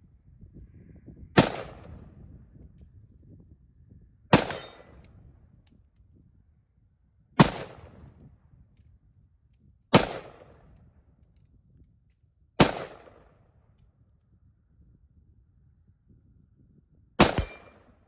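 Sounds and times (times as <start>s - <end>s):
rifle shots with echo: 1.4s - 1.9s, 4.3s - 4.9s, 7.4s - 8.0s, 9.9s - 10.6s, 12.6s - 13.3s, 17.2s - 17.9s.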